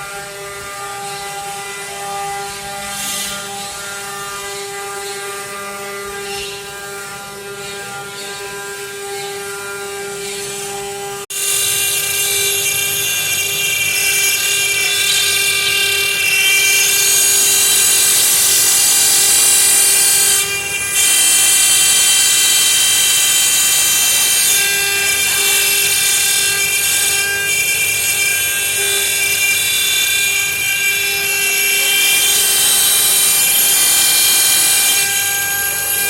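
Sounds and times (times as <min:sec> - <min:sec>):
bit cutting stone hiss: 0:11.3 - 0:36.0.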